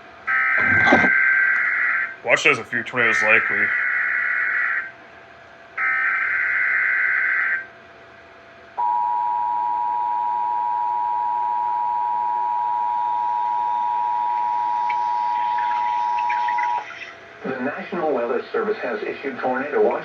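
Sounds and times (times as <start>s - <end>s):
screeching digital data bursts: 15.0s - 17.1s.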